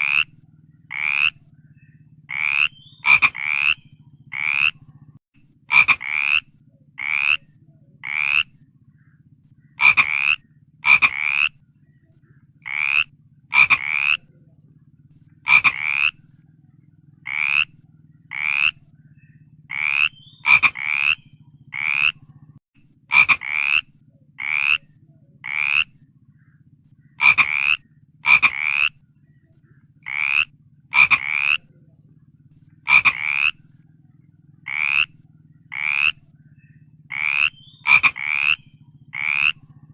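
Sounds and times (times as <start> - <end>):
frogs croaking: 0.0 - 39.9
steady low hum: 0.0 - 39.9.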